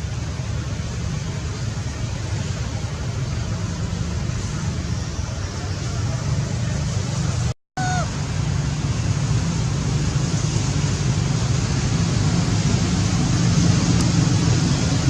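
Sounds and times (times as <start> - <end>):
steady rumbling noise: 0.0 - 15.0.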